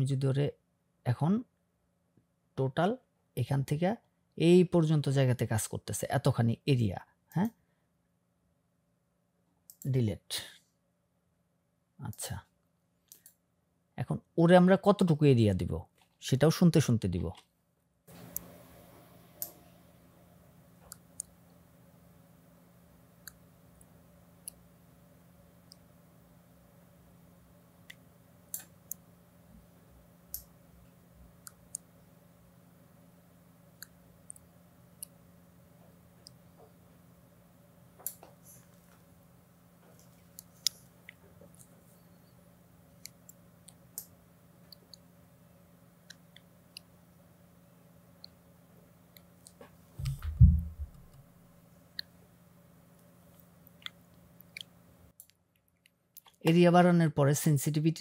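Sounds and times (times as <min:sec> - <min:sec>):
faint electrical hum: 0:00.0 - 0:58.0
computer mouse clicking: 0:13.1 - 0:13.4
low thump: 0:50.0 - 0:51.2.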